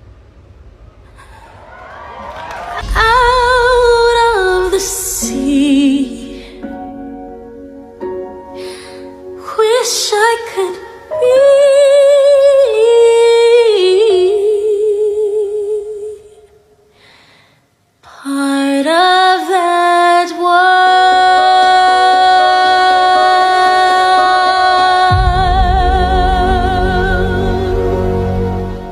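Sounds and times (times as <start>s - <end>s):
woman singing with vibrato: 2.8s - 6.9s, 9.4s - 16.5s, 18.1s - 28.9s
low musical accompaniment: 2.8s - 14.0s, 21.9s - 28.9s.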